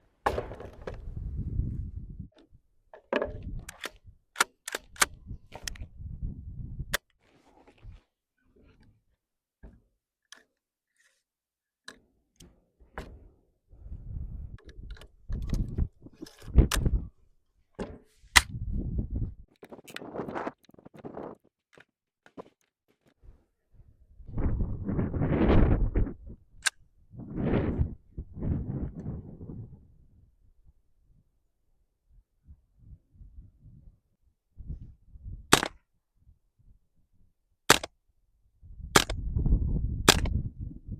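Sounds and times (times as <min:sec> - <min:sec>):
metallic rifle clicks and clunks: 0:02.3 - 0:05.9, 0:14.6 - 0:17.0, 0:17.8 - 0:18.6, 0:37.7 - 0:37.9, 0:39.0 - 0:39.2, 0:40.1 - 0:40.4
sharp snaps: 0:40.1 - 0:40.4.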